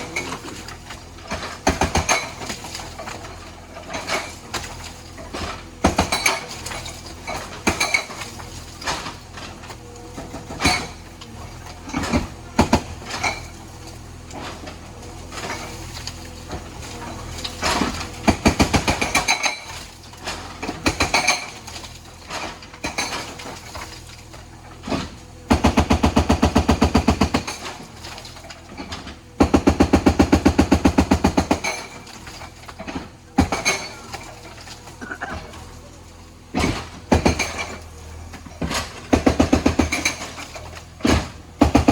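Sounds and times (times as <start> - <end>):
engine hum: 0.0 - 41.9
hydraulic breaker hammering: 1.0 - 9.6, 17.4 - 24.0, 24.6 - 35.3, 36.4 - 41.9.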